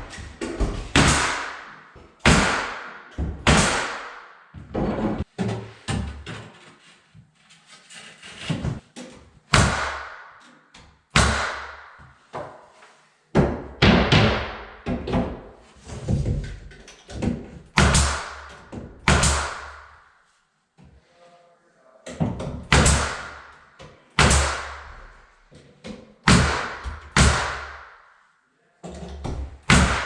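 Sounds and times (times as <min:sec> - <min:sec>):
knocks on wooden shelving: 0:13.4 - 0:19.5.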